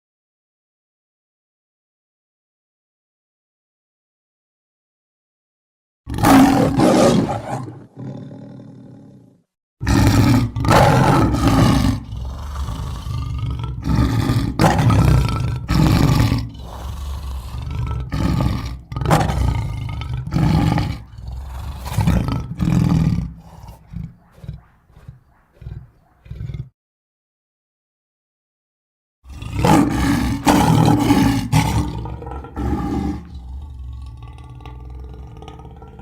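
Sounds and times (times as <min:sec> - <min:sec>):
lion grunting: 0:06.1 - 0:26.7, 0:29.3 - 0:36.0
lion roaring: 0:06.1 - 0:26.8, 0:29.3 - 0:36.0.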